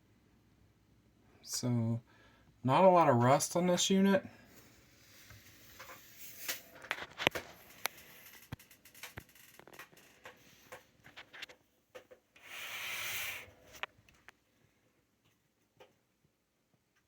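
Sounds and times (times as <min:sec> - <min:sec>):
rubbing sliding sound: 0:12.4 - 0:13.8.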